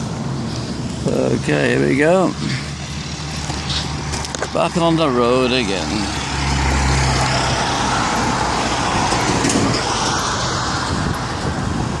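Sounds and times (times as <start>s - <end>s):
tyre and road noise: 0.0s - 12.0s
vehicle engine hum passing: 0.0s - 12.0s.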